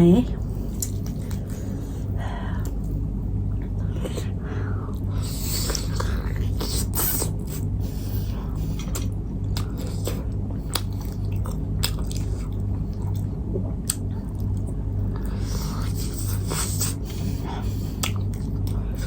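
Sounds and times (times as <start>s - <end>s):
low steady hum: 0.0s - 19.0s
person chewing food: 0.6s - 3.0s, 3.6s - 19.0s
wet mouth clicks and smacks: 18.0s - 18.8s.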